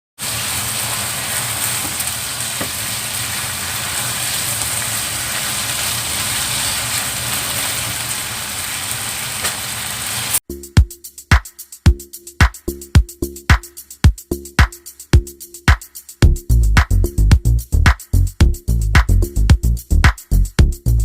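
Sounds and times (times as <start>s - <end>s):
food sizzling in a pan: 0.2s - 10.4s, 12.6s - 21.0s
music with heavy drum beat: 10.4s - 21.0s.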